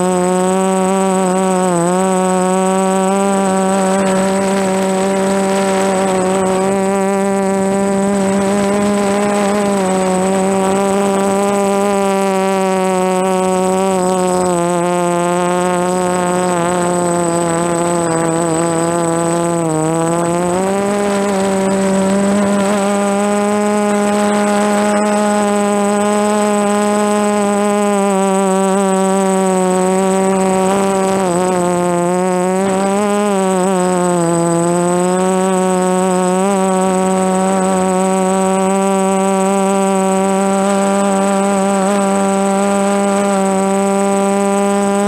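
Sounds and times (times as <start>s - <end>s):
quadcopter propellers buzzing: 0.0s - 45.0s
thin high whine: 0.0s - 45.0s.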